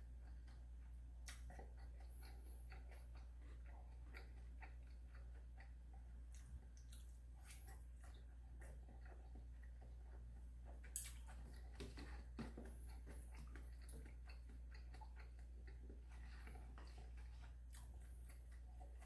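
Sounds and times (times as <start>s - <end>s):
soft chewing: 0.0s - 19.0s
steady low hum: 0.0s - 19.0s.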